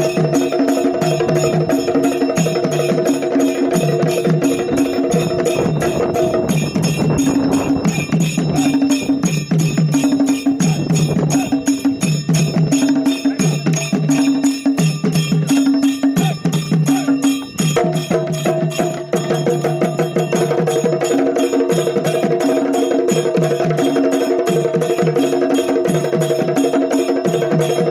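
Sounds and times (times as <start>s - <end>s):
sustained melodic tones: 0.0s - 19.7s
fast percussion drumming: 0.0s - 27.9s.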